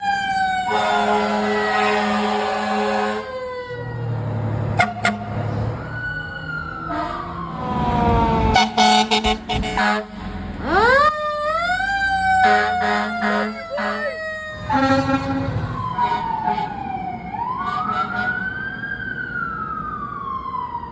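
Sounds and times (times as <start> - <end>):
siren sliding in pitch: 0.0 - 20.9
fire truck air horn blasts: 0.5 - 3.7, 4.7 - 5.7, 6.8 - 11.1, 12.3 - 18.6.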